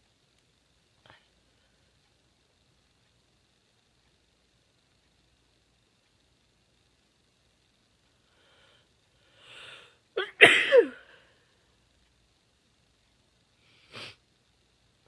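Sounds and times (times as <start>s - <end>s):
breathy inhale: 8.2s - 10.0s
woman sneezing: 10.2s - 11.1s.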